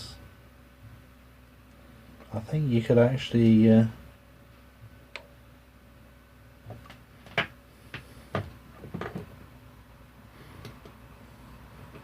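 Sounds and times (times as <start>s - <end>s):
plastic parts clicking and knocking: 6.7s - 9.4s.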